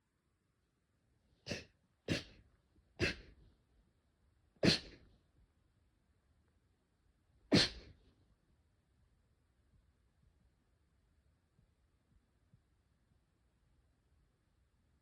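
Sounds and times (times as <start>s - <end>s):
person sneezing: 1.5s - 2.4s, 3.0s - 3.4s, 4.6s - 5.0s, 7.5s - 8.0s.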